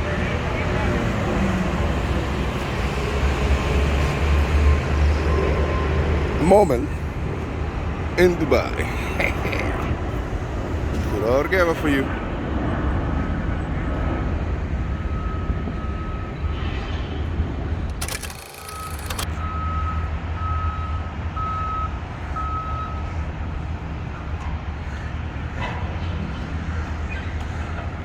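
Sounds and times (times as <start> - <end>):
engine and traffic rumble: 0.0 - 28.0
reversing alarm beeping: 4.0 - 7.2, 14.8 - 16.6, 18.0 - 23.2.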